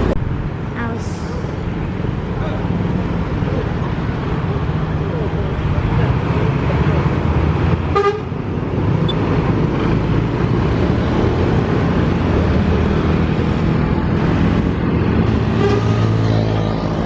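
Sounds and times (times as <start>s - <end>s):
heavy vehicle engine running: 0.0s - 17.0s
road traffic: 0.0s - 17.0s
short horn toot: 15.3s - 16.2s.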